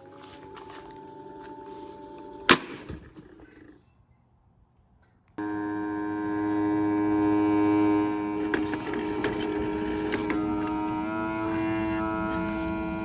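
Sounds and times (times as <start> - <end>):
small electric motor humming: 5.4 - 13.0.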